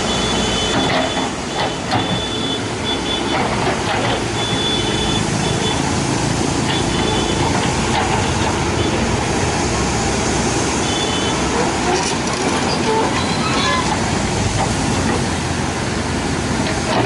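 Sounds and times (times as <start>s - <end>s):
excavator diesel engine running: 0.0s - 17.0s.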